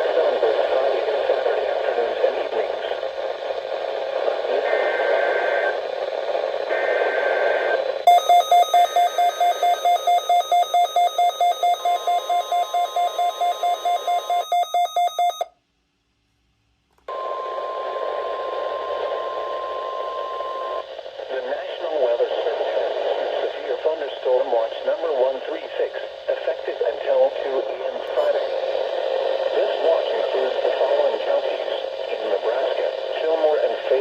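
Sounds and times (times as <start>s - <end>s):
radio hiss: 0.0s - 8.1s, 17.1s - 34.0s
steady warning tone: 6.7s - 15.5s
alert data bursts: 8.1s - 15.4s
pulsing alarm beep: 8.1s - 15.5s.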